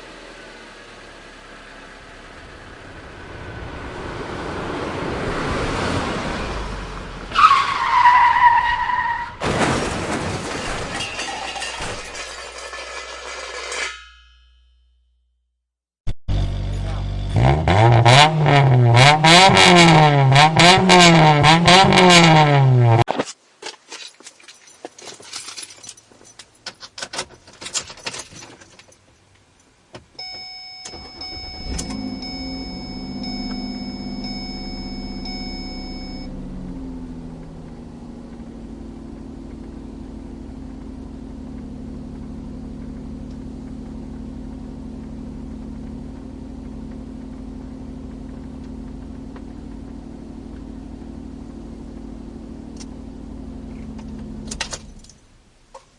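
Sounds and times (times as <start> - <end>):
car engine starting and idling: 0.0 - 9.2, 16.3 - 22.8, 29.8 - 55.9
keys jangling: 23.9 - 29.0
electronic chime: 30.2 - 36.3.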